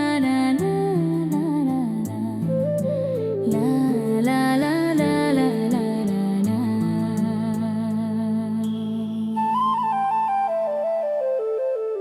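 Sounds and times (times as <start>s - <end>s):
flute melody: 2.3s - 4.8s, 9.0s - 12.0s.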